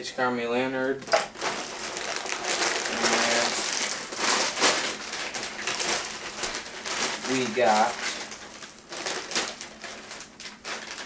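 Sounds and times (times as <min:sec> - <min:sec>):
packaging crinkling and rustling: 0:01.0 - 0:11.0.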